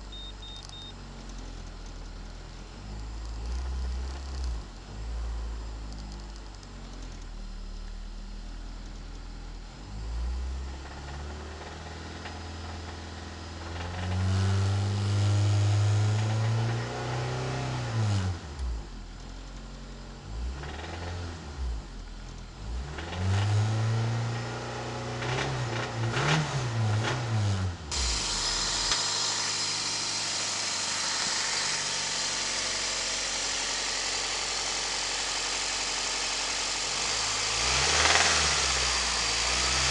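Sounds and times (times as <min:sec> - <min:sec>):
car engine revving: 0:09.6 - 0:19.0, 0:20.2 - 0:39.9.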